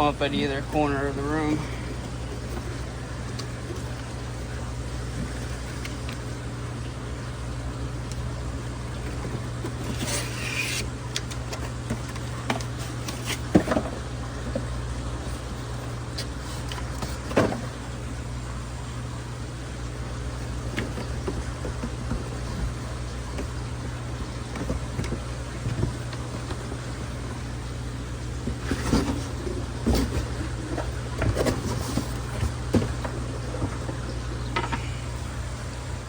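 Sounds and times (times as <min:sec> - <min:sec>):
equipment humming: 0:00.0 - 0:36.0
handling clicks and knocks: 0:28.4 - 0:35.0.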